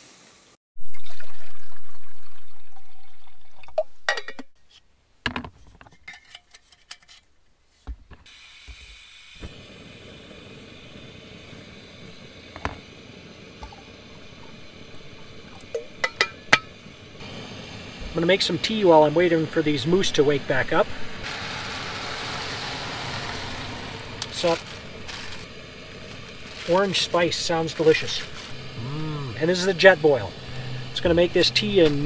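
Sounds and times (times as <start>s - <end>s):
gas stove burner hissing: 0.0s - 0.6s, 8.2s - 32.0s
water pouring into cup: 0.8s - 4.0s.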